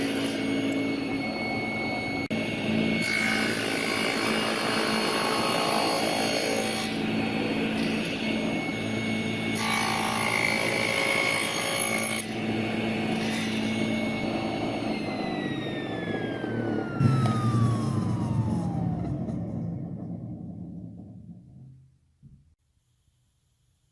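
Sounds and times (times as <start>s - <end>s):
power saw cutting wood: 0.0s - 1.5s, 2.2s - 19.3s.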